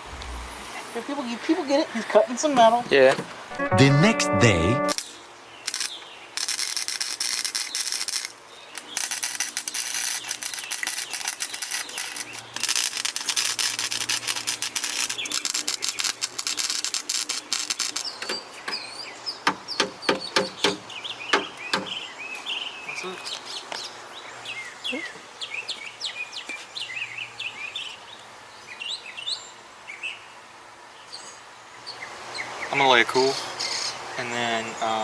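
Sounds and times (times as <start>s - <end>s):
welder crackling and spattering: 4.9s - 18.4s
birds chirping: 17.8s - 35.0s.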